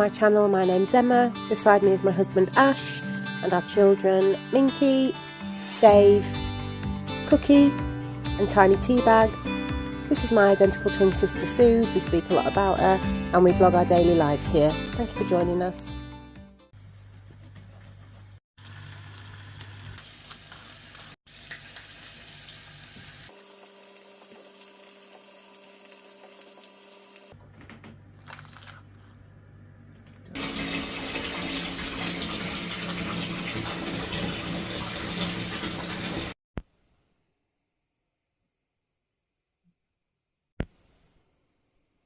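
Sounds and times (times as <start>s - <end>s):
tap water running into sink: 21.3s - 23.2s, 30.4s - 36.4s.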